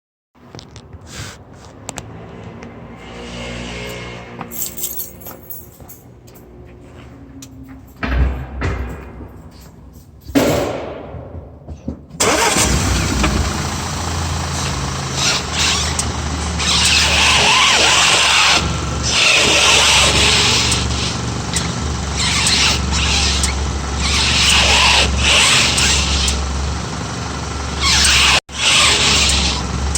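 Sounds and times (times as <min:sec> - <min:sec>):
car engine starting and running: 0:12.2 - 0:29.9.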